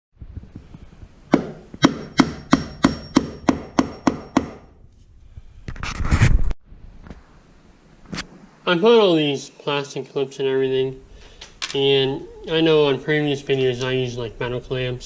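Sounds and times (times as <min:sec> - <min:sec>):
hammer striking nail into wood: 0:01.3 - 0:04.7
short scraping rustle: 0:05.7 - 0:06.6.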